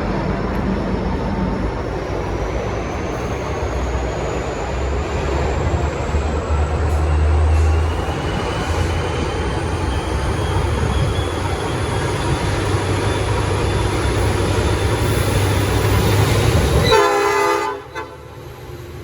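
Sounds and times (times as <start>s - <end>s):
diesel locomotive rumbling: 0.0s - 19.0s
locomotive air horn chord: 16.8s - 18.4s.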